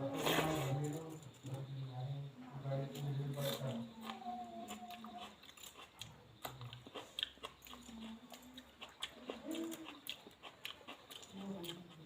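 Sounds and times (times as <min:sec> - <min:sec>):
close-up chewing with crunches: 0:03.4 - 0:12.0.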